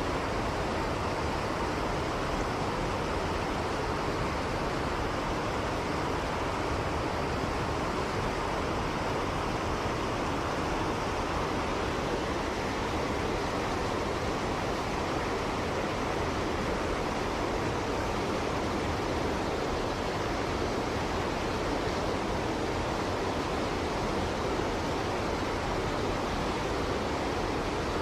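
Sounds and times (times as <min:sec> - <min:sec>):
stream rushing over rocks: 0:00.0 - 0:28.0.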